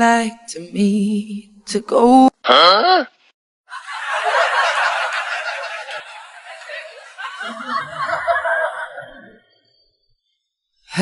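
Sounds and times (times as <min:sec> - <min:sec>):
laughter: 0:03.7 - 0:09.5.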